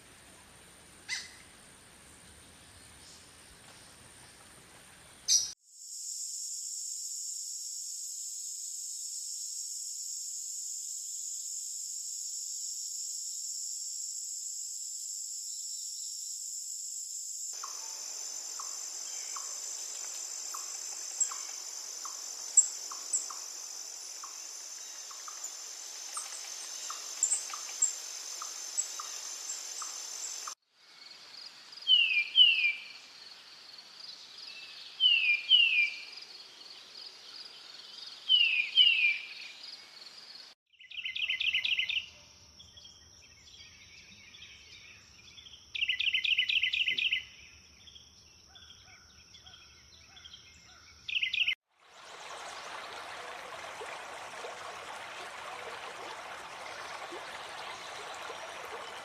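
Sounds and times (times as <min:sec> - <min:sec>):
insects trilling: 0:05.3 - 0:40.5.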